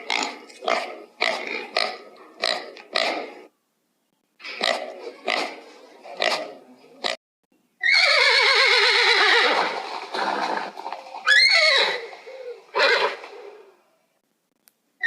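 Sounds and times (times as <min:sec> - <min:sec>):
horse whinnying: 0:07.8 - 0:13.4.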